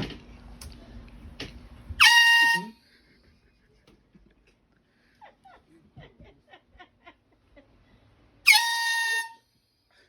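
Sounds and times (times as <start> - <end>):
air horn blast: 2.0 - 2.8, 8.5 - 9.5.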